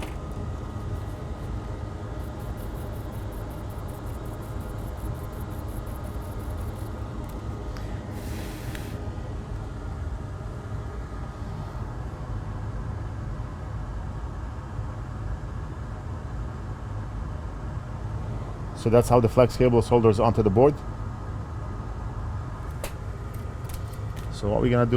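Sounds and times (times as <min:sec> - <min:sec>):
workshop rumble: 0:00.0 - 0:09.6
short hiss: 0:08.1 - 0:09.0.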